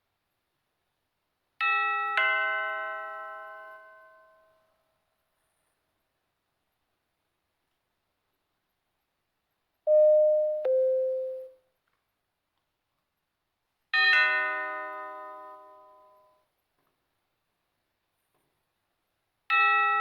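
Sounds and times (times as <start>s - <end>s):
multi-tone doorbell chime: 1.6s - 4.5s, 9.9s - 11.6s, 14.0s - 16.4s
two-tone doorbell ding-dong: 9.9s - 11.6s.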